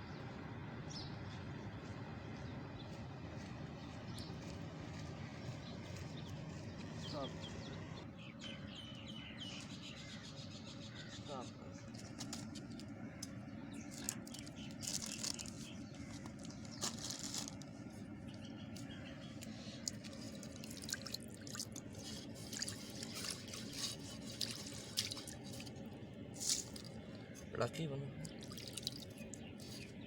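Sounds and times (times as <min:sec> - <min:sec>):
steady low hum: 0:00.0 - 0:30.0
liquid drips and pops: 0:28.2 - 0:29.4.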